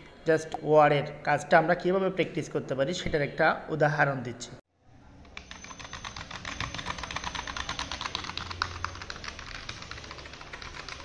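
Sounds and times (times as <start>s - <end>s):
fast typing on keyboard: 5.4s - 11.0s.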